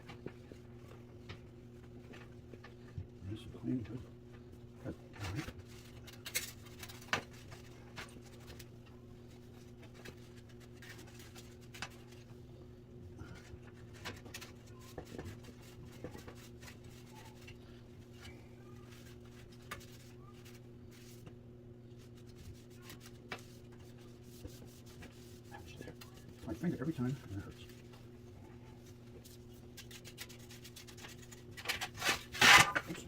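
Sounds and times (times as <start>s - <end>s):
low electrical hum: 0.0s - 33.0s
paper towel rubbing: 22.0s - 27.9s.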